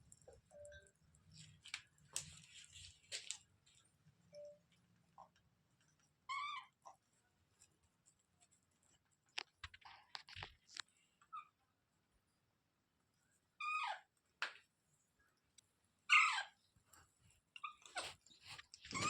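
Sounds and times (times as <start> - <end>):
faint clicks and scratching: 0.0 - 12.0, 16.6 - 19.0
parrot squawk: 13.6 - 14.1, 16.1 - 16.6.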